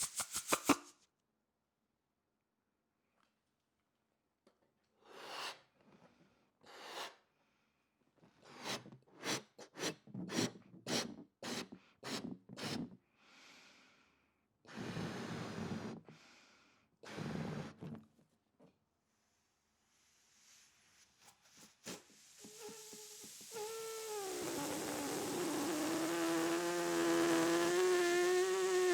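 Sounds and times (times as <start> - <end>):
person blowing into a balloon: 0.0 - 0.9, 21.6 - 28.9.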